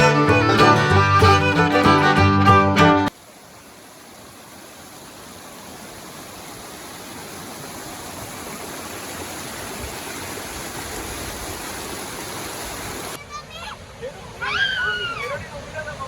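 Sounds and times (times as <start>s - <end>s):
rushing water: 0.0s - 16.0s.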